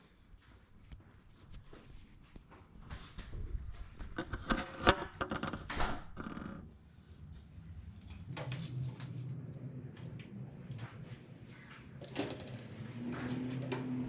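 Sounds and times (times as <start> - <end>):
tools and parts rattling: 8.2 - 9.4.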